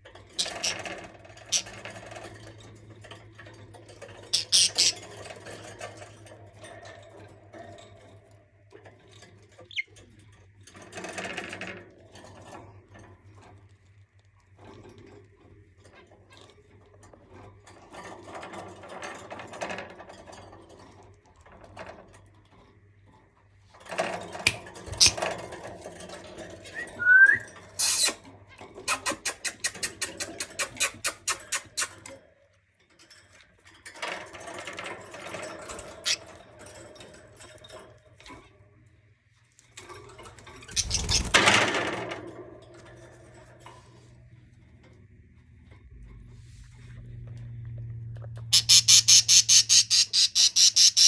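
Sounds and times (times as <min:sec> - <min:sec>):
budgerigars chattering: 0:00.4 - 0:00.8, 0:04.4 - 0:05.0, 0:48.5 - 0:51.0
rising whistle: 0:26.8 - 0:27.5.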